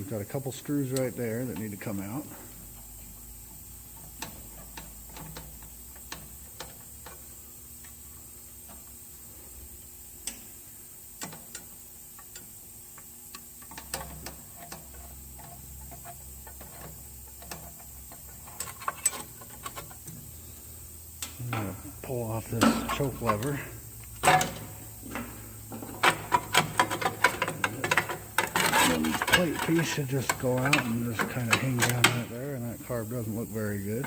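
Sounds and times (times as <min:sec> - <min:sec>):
hand tools clicking on metal parts: 0:13.3 - 0:20.2, 0:22.5 - 0:33.0.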